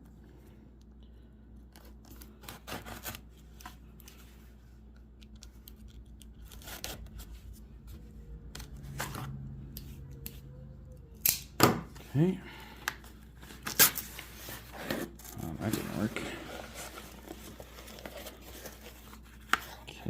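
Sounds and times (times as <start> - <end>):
knife slicing tape and cardboard: 2.4 - 3.2.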